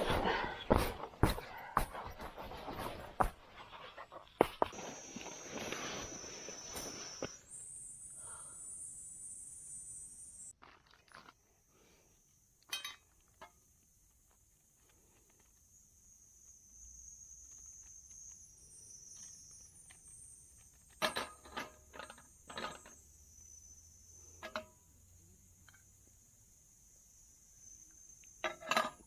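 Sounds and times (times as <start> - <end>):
insects chirring: 0.0 - 29.0
knocks and clatters of handling: 20.6 - 23.0, 28.4 - 29.0.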